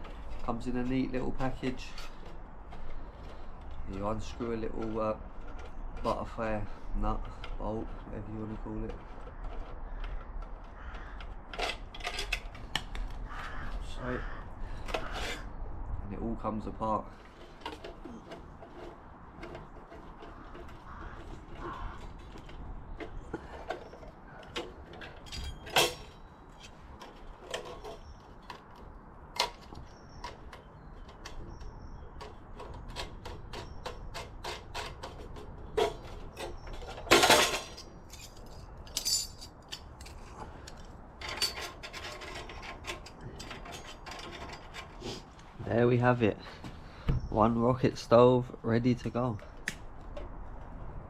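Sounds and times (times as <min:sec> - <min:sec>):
light metal clicks and scrapes: 0:00.0 - 0:13.9, 0:17.1 - 0:45.6
metal panels clattering: 0:17.3 - 0:26.2, 0:32.2 - 0:40.2.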